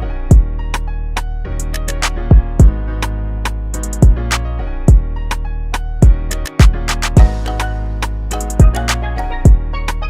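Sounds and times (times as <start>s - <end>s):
melodic hip-hop loop: 0.0s - 10.0s
ticking hi-hats: 1.6s - 2.8s, 3.8s - 4.4s, 6.0s - 9.6s.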